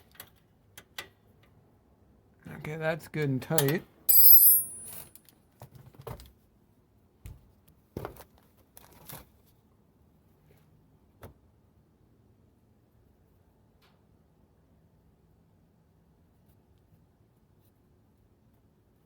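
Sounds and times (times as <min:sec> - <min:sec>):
sharp metallic clink: 0:03.6 - 0:05.0.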